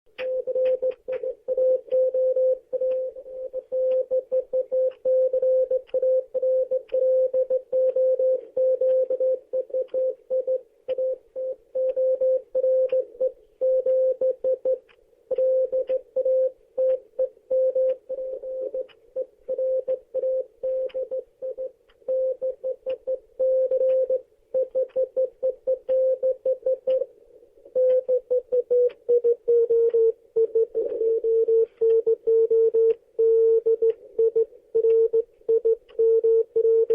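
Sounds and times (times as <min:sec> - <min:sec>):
faint crackly clicks: 0:00.1 - 0:02.1, 0:02.8 - 0:04.1.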